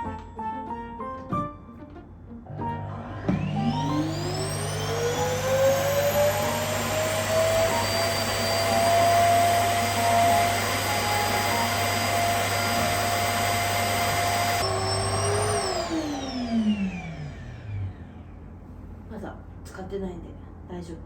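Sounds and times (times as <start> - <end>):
vacuum cleaner motor whining: 2.5 - 18.3.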